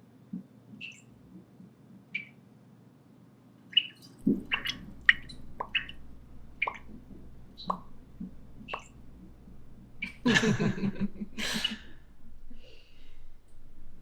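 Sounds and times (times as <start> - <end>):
high squeaky chirps: 0.8 - 1.1, 2.2 - 2.4, 3.8 - 7.0, 7.6 - 7.9, 8.6 - 9.0.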